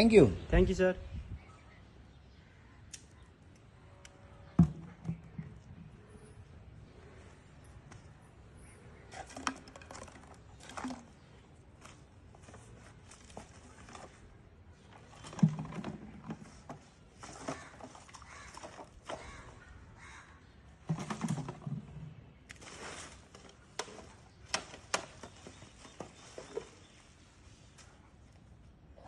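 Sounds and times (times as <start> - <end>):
handling clicks and knocks: 20.8 - 22.0.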